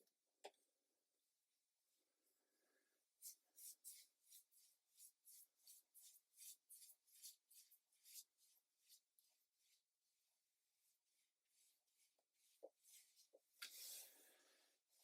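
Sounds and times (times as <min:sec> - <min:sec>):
paintbrush swishing on paper: 0:03.2 - 0:15.0.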